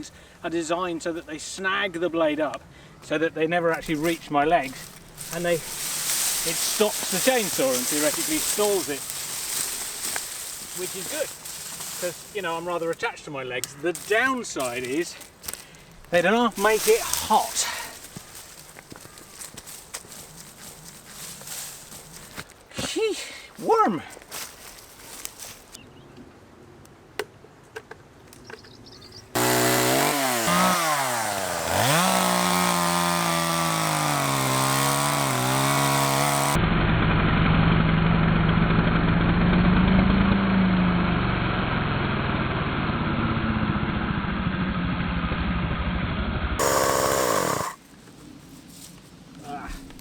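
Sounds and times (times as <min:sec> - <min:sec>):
chainsaw cutting wood: 0:03.8 - 0:12.6, 0:16.4 - 0:22.5, 0:29.4 - 0:36.6, 0:46.6 - 0:47.8.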